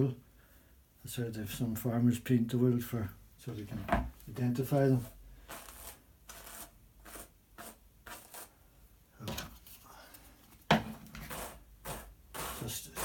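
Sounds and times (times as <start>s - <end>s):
hand carders brushing wool: 4.6s - 8.6s, 11.0s - 13.0s.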